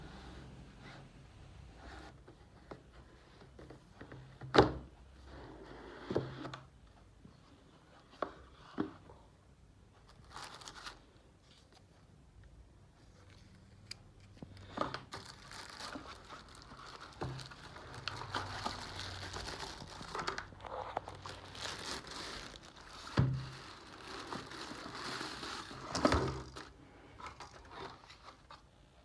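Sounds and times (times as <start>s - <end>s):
plastic packaging crinkling: 10.2s - 11.0s, 14.6s - 28.6s.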